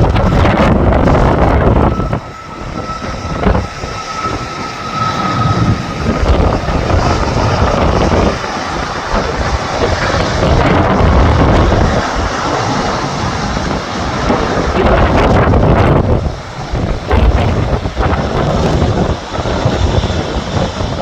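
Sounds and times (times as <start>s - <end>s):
faint high whine: 0.0s - 15.2s
wind buffeting microphone: 0.0s - 21.0s.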